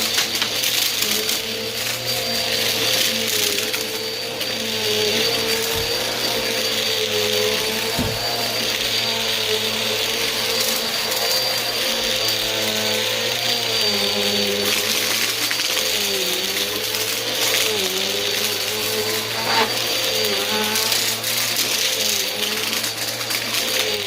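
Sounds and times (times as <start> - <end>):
vacuum cleaner running: 0.0 - 24.0.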